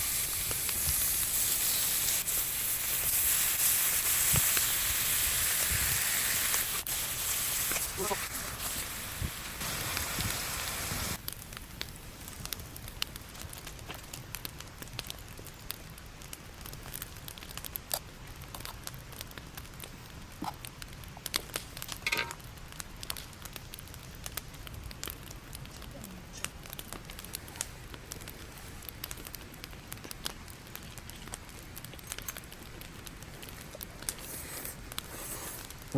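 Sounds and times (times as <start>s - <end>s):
loud hiss: 0.0s - 11.2s, 34.1s - 35.9s
campfire crackling and popping: 0.0s - 35.9s.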